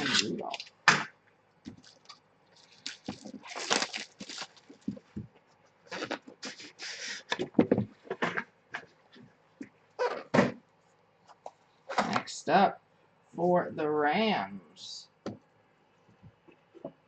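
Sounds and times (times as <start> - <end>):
cards and packaging rustling: 1.7 - 5.3.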